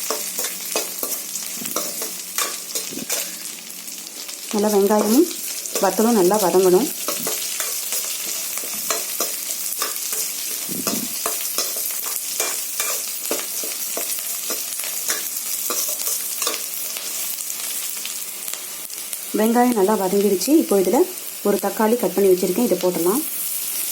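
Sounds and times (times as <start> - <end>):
spatula scraping and tapping pan: 0.0 - 3.4, 7.0 - 16.7
onions sizzling in a pan: 0.0 - 23.9.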